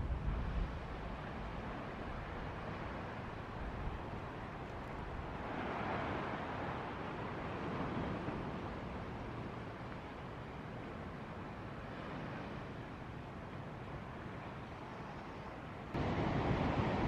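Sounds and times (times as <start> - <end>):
wind on microphone: 0.0 - 9.1
ocean waves breaking: 0.0 - 17.0.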